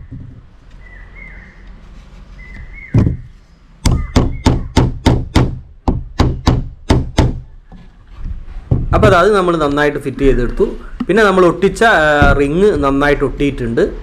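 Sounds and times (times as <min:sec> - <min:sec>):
hammer driving nails into wood: 0:03.0 - 0:07.4.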